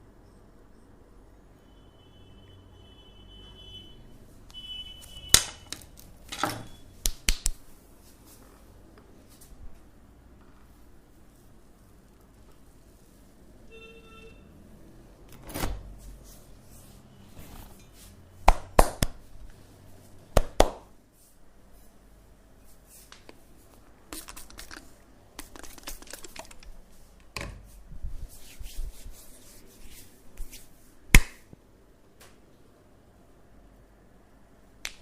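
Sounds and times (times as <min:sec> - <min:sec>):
hands slapping skin: 0:07.0 - 0:07.6, 0:18.5 - 0:19.2, 0:20.4 - 0:20.9, 0:24.1 - 0:26.7, 0:30.4 - 0:31.5
hands rubbing and scratching: 0:24.1 - 0:26.9, 0:28.1 - 0:30.8.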